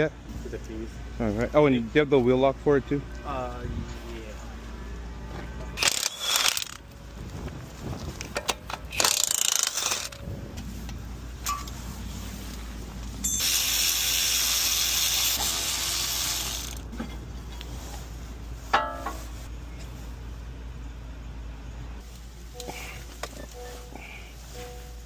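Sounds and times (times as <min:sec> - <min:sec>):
ratchet wrench: 0:05.8 - 0:06.8, 0:08.4 - 0:10.2, 0:13.3 - 0:16.8
hand tool clicks: 0:08.2 - 0:10.2.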